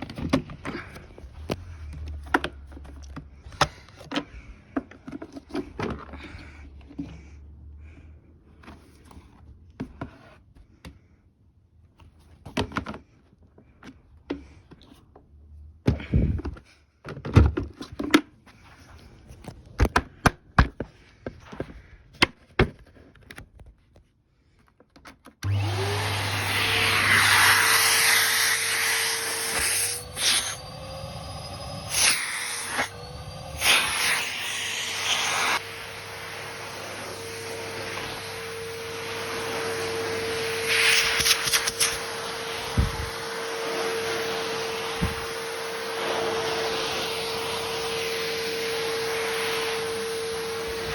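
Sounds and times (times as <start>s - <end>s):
vacuum cleaner motor whine: 25.4s - 50.9s.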